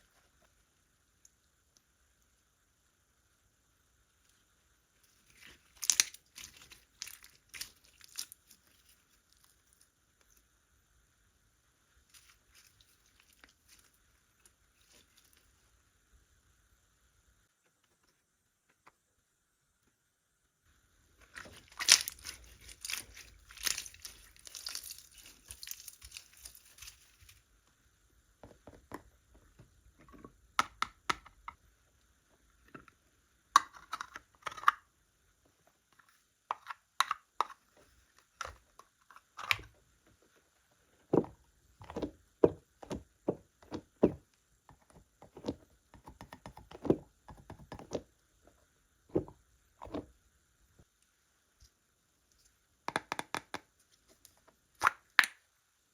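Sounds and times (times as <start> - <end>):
slime crackling and popping: 5.4 - 8.7.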